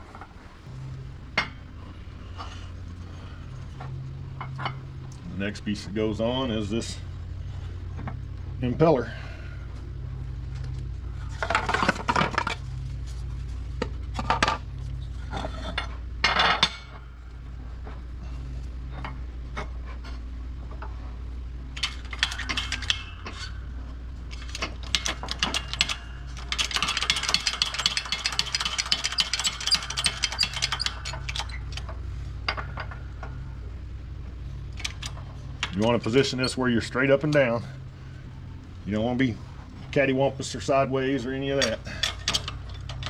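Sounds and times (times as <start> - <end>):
steady low hum: 0.0 - 43.0
metal tools clinking: 21.8 - 33.4, 34.7 - 37.7, 41.4 - 43.0.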